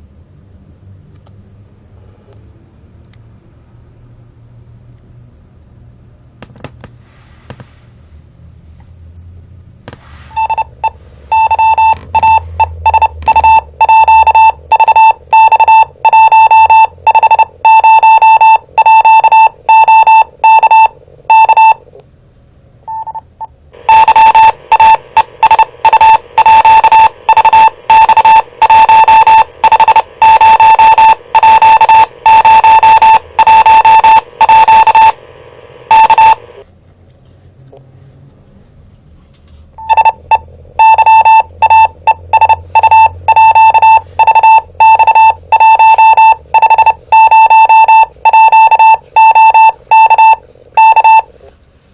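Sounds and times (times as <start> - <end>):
distorted pulsing radio beeps: 23.9 - 35.2, 35.9 - 36.4, 39.8 - 51.2.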